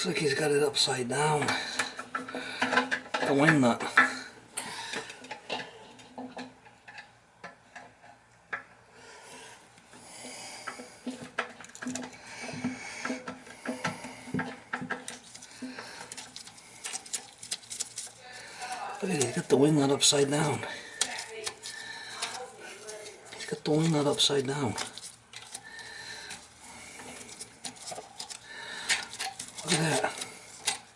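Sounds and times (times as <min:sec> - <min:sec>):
scraping: 0:10.1 - 0:30.9.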